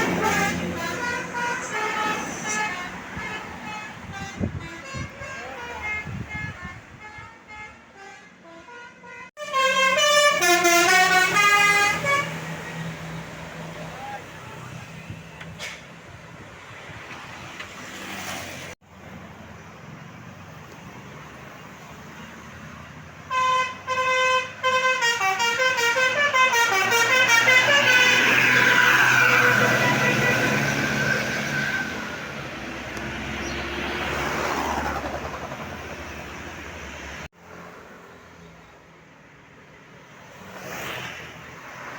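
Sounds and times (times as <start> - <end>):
bus engine drone: 0.0 - 5.0, 9.4 - 40.3
multi-tone bus horn tune: 0.0 - 12.8, 23.2 - 32.6.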